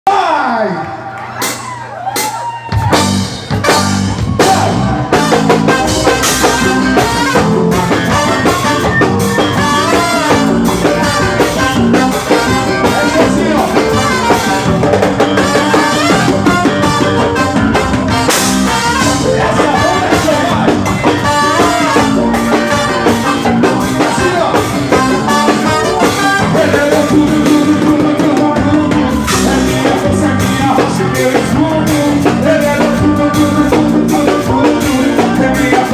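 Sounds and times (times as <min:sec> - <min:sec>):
band playing with drum kit: 0:01.2 - 0:35.9
person singing: 0:04.3 - 0:35.9.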